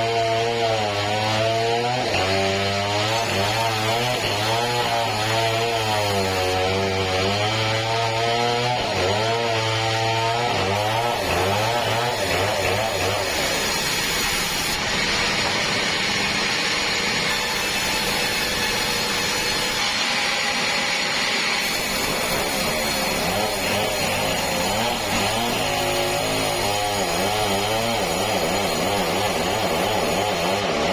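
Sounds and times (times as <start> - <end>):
saw cutting log: 0.0 - 30.9
sawmill engine wavering: 9.8 - 30.9.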